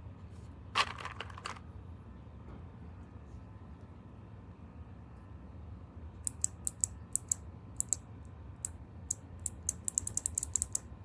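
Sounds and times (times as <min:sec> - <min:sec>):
clicky keyboard typing: 0:09.4 - 0:10.8.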